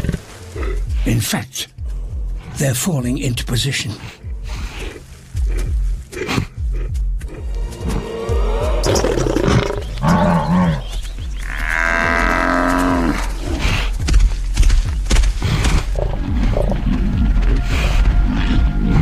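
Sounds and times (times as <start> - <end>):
lions growling and snarling: 4.0 - 14.3, 15.2 - 19.0.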